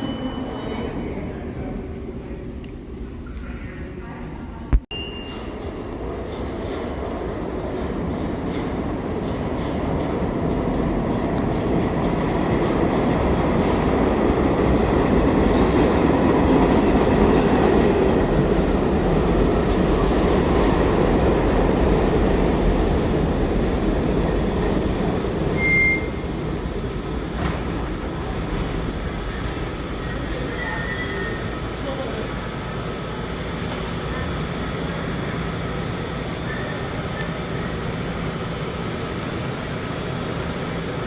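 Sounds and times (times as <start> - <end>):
subway train rumbling: 0.0 - 41.0
high wheel squeal: 25.6 - 26.3, 29.3 - 31.6.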